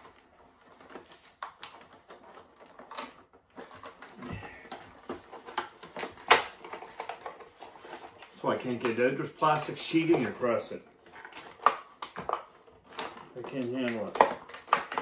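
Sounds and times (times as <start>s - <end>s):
plastic sheeting crinkling: 0.0s - 15.0s.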